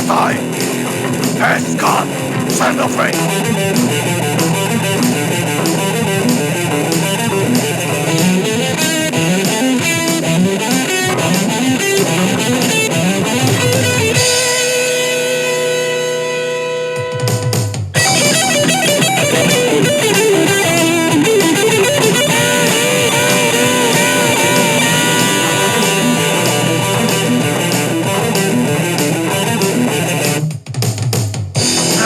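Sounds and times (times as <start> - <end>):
lead guitar melody: 18.0 - 30.1
rock band playing: 18.0 - 30.4.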